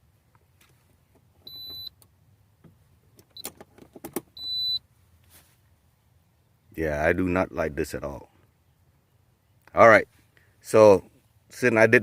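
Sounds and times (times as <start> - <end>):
short high electronic beeps: 4.4 - 4.8.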